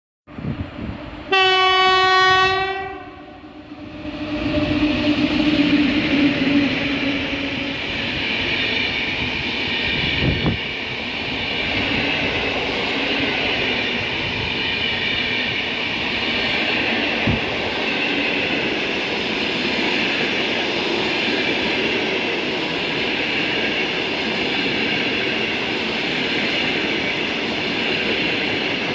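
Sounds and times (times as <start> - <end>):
train wheels rumbling on rails: 0.3 - 28.9
train horn: 1.3 - 8.0.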